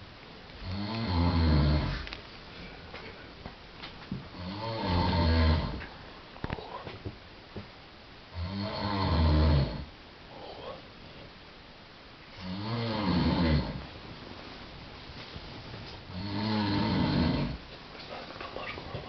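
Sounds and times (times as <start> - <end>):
person snoring: 0.6 - 2.0, 4.4 - 5.8, 8.4 - 10.7, 12.4 - 13.8, 16.1 - 17.6.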